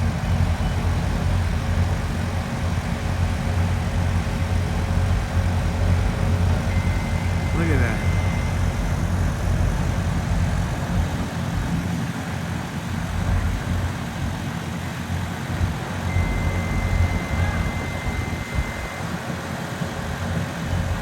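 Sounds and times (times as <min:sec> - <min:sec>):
traffic rumble: 0:00.0 - 0:21.0
thin high whine: 0:06.3 - 0:10.6, 0:16.0 - 0:19.2.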